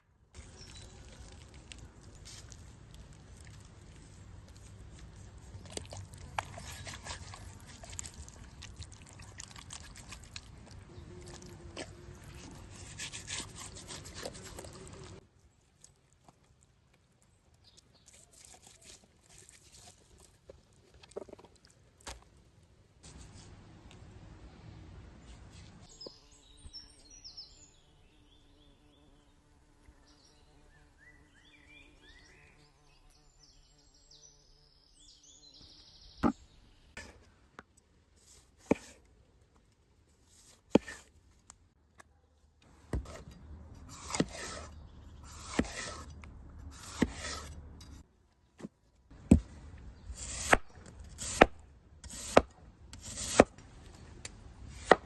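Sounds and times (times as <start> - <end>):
faint birdsong: 0.4 - 2.3, 24.4 - 37.4, 44.4 - 45.9
knife swishing scrape: 12.4 - 15.2, 43.9 - 46.1, 46.7 - 47.6.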